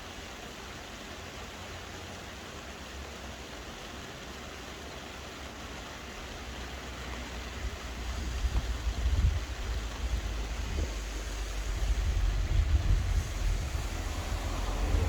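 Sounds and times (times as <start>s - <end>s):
soft rain hissing: 0.0s - 15.0s
low uneven rumble: 7.6s - 15.0s.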